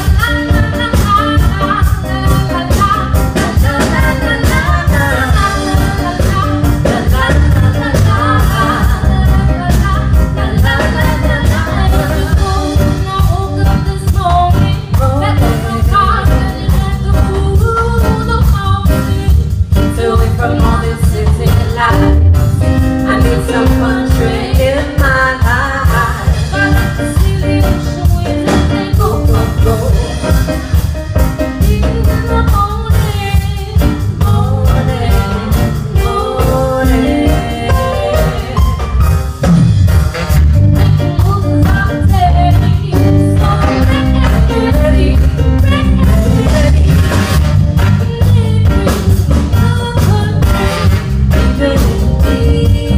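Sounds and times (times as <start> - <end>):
live band playing: 0.0 - 52.9
person singing: 31.7 - 38.9.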